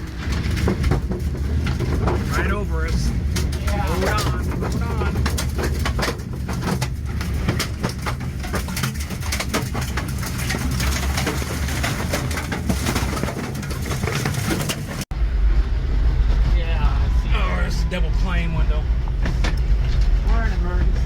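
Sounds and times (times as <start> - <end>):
debris knocking and clattering: 0.0 - 15.1
tornado wind rumbling: 0.0 - 21.0.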